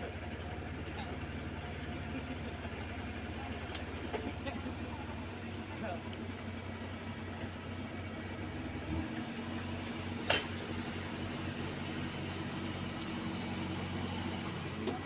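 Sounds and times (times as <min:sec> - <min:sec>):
paving machine engine hum: 0:00.0 - 0:15.0.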